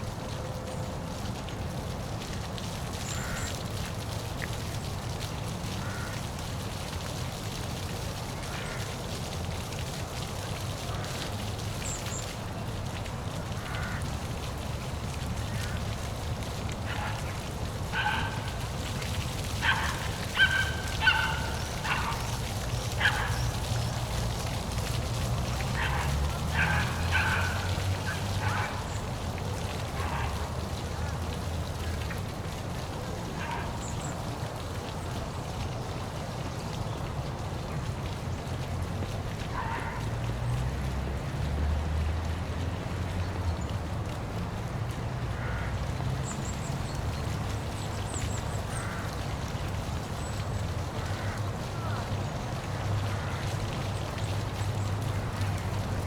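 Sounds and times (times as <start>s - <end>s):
waterfall rushing: 13.2s - 34.5s.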